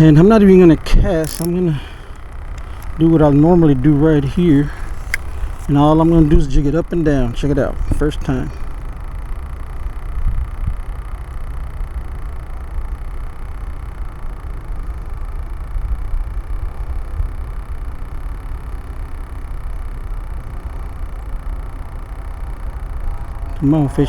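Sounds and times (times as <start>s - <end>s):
wind buffeting microphone: 0.0s - 8.8s.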